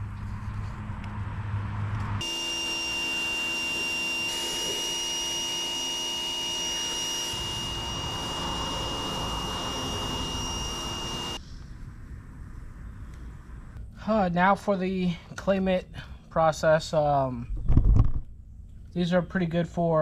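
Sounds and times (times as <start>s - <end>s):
motor high whine: 1.8s - 11.4s.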